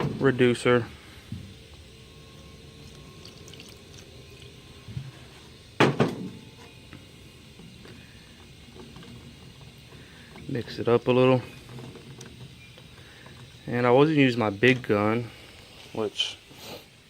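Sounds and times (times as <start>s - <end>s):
liquid trickling into a cup: 2.8s - 4.6s.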